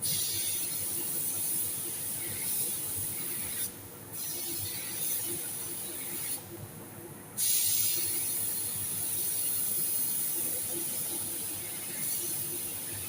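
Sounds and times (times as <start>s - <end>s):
paint spray gun hissing: 7.4s - 12.9s.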